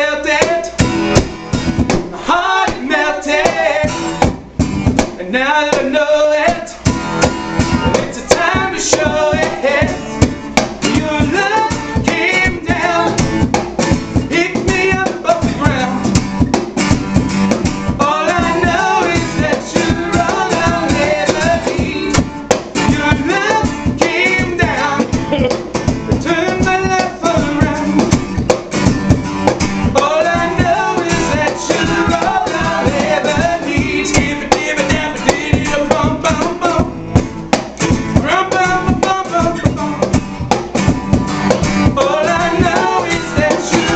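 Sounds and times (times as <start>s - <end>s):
cajon beat: 0.0s - 43.9s
strummed acoustic guitar: 0.0s - 43.9s
person singing: 7.7s - 13.3s, 18.0s - 28.1s, 30.0s - 36.9s, 41.8s - 43.9s.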